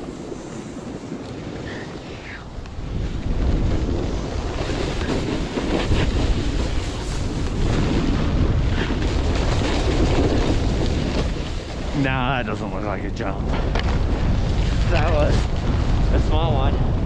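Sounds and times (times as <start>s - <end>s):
snowboard scraping over snow: 0.0s - 17.0s
wind buffeting microphone: 0.0s - 17.0s.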